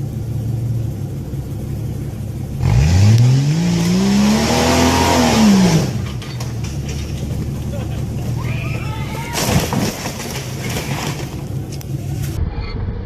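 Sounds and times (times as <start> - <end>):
off-road vehicle engine revving: 1.4 - 8.8.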